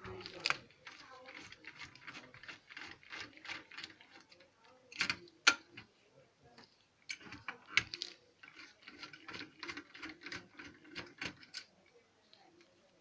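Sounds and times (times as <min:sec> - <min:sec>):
screwdriver clicking and scraping: 0:00.2 - 0:05.6, 0:07.1 - 0:11.7.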